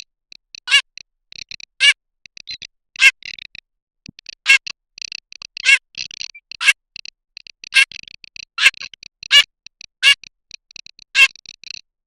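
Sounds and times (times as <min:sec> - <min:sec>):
soft clicking rattles: 0:03.2 - 0:11.9
duck rattling calls: 0:05.4 - 0:06.8, 0:07.7 - 0:10.2, 0:11.0 - 0:11.7.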